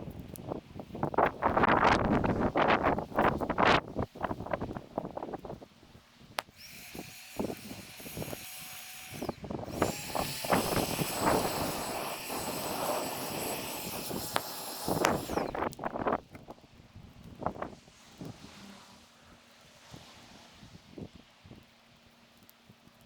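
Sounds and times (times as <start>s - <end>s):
bonfire crackling and popping: 0.0s - 8.4s, 9.1s - 18.4s, 21.0s - 23.0s
high hiss with whistling tone: 6.5s - 15.7s.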